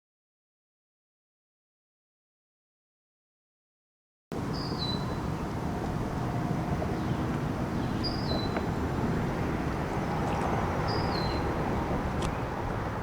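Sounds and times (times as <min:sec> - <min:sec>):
low rumbling outdoor noise: 0:04.3 - 0:13.0
bird calling: 0:04.4 - 0:12.5.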